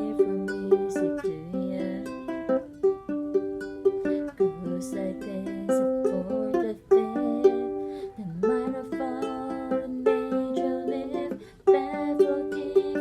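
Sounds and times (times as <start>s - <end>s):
ukulele plucked chords: 0.0s - 13.0s.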